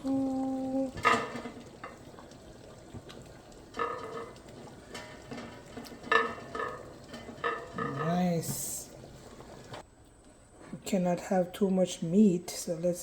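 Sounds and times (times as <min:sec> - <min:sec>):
ladle clinking against pot: 0:03.8 - 0:08.0.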